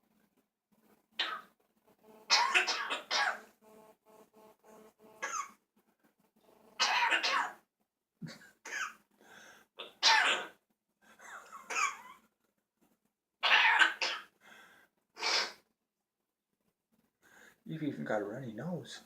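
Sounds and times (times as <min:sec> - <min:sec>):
person coughing: 0:05.2 - 0:05.6.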